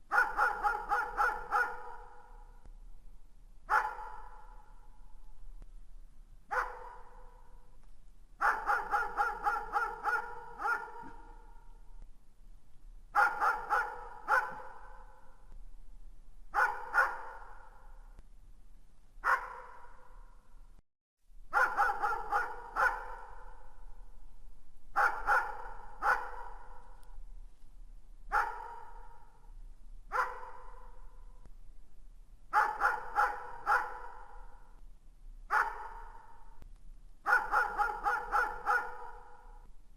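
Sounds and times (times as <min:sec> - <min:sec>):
distant dog barking: 0:00.1 - 0:02.5, 0:03.7 - 0:04.7, 0:06.5 - 0:07.5, 0:08.4 - 0:11.8, 0:13.2 - 0:15.3, 0:16.5 - 0:17.9, 0:19.2 - 0:20.1, 0:21.5 - 0:23.6, 0:25.0 - 0:27.0, 0:28.3 - 0:29.4, 0:30.1 - 0:31.1, 0:32.5 - 0:34.7, 0:35.5 - 0:36.6, 0:37.2 - 0:39.6.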